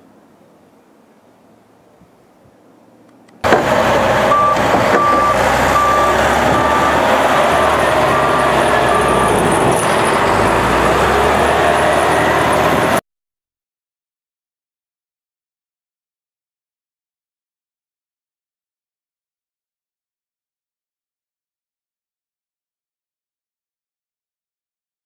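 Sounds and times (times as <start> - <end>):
reversing alarm beeping: 3.4 - 12.9
truck engine running: 3.4 - 13.0.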